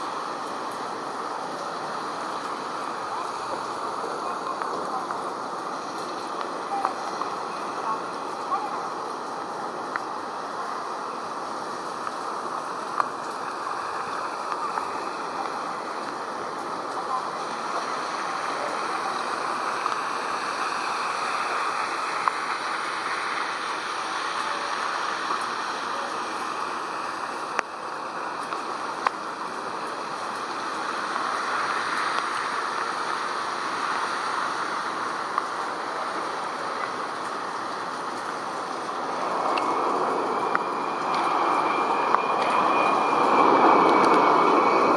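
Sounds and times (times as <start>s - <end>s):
jet engine rushing: 30.0s - 44.9s.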